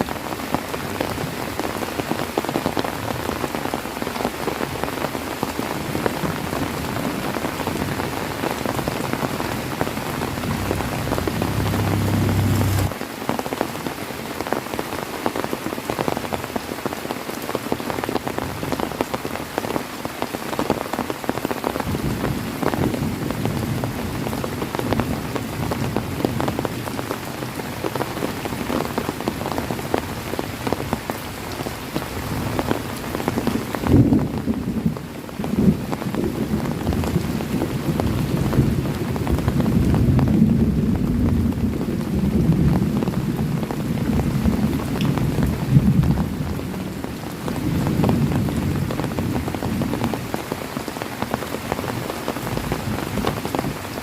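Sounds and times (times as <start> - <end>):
heavy rain falling: 0.0 - 54.0
low rumble: 9.7 - 12.9.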